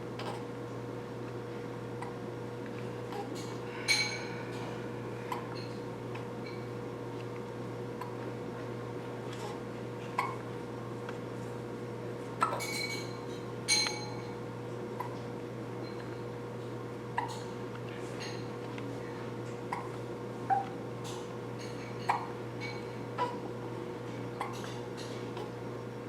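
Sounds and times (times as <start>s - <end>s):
steady hum: 0.0s - 26.0s
person hiccuping: 10.2s - 10.4s, 12.4s - 12.7s, 15.0s - 15.2s, 19.7s - 20.7s, 22.1s - 22.3s, 24.4s - 24.6s.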